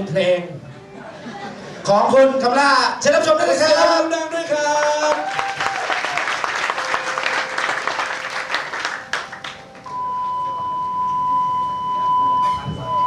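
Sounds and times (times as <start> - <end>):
audience applauding: 4.5 - 9.9
high electronic tone: 9.9 - 13.0.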